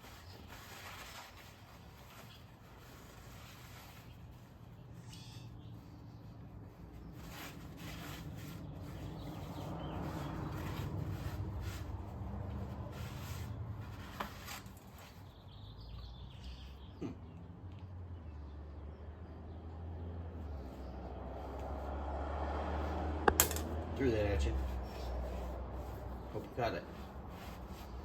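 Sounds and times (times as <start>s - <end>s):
paper towel rubbing on metal wheel: 0.0s - 15.4s, 24.0s - 28.0s.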